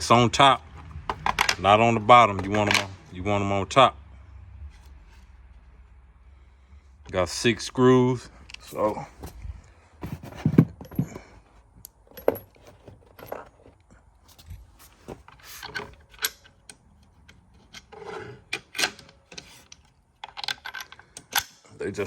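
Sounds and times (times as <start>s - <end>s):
parts rubbing and scraping: 0.0s - 3.2s, 8.4s - 21.5s.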